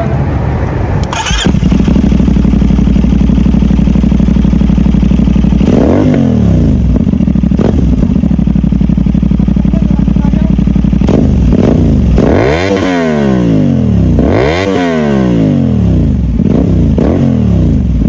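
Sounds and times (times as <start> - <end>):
motorcycle engine idling: 1.0 - 12.6, 15.8 - 18.0.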